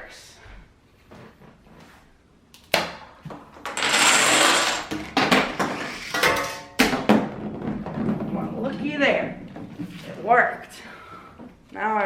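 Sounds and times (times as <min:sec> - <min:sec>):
ball rattling through tube: 0:03.6 - 0:05.6
dominoes toppling clicks: 0:03.8 - 0:04.9.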